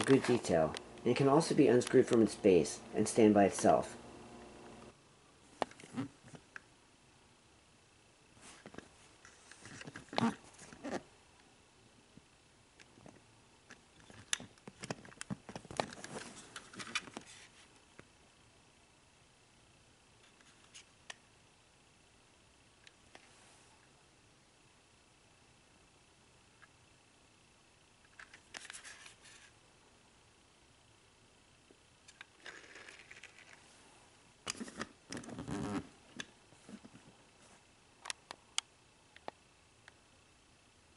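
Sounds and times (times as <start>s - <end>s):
soft rustle: 8.4s - 11.0s, 15.5s - 17.8s, 28.6s - 29.6s, 33.3s - 37.8s.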